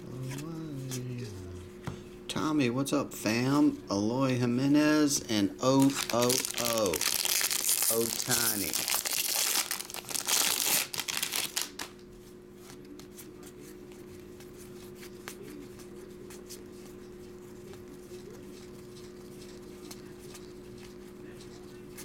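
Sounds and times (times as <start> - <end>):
low steady hum: 0.0 - 22.0
cards being handled: 5.7 - 12.0
foil wrapper crinkling and tearing: 5.7 - 12.0.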